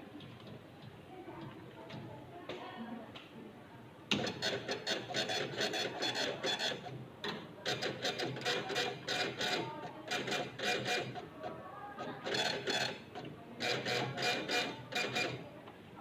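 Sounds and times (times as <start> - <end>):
receipt printer printing: 4.1 - 15.5.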